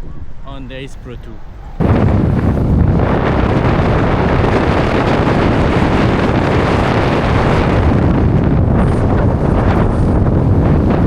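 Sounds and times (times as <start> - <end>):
wind noise on microphone: 1.4 - 11.0.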